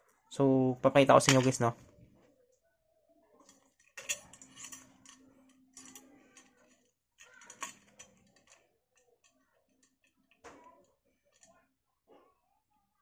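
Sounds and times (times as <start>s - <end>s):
small tools clicking and tapping: 1.2s - 1.7s, 3.4s - 11.6s.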